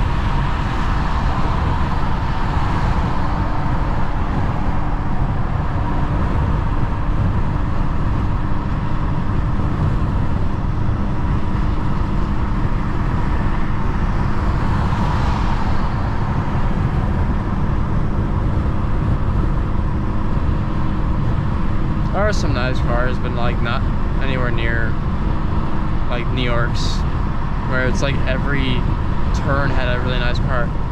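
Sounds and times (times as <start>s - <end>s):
car engine running: 0.0s - 30.9s.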